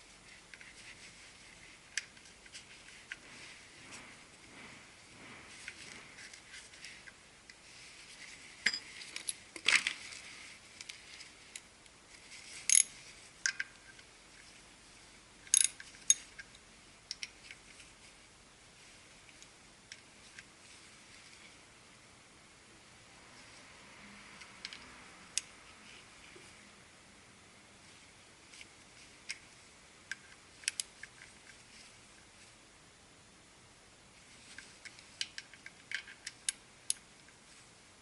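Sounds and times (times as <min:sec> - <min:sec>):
metal tools clinking and tapping: 0:08.6 - 0:09.4, 0:12.7 - 0:14.0, 0:15.5 - 0:17.4.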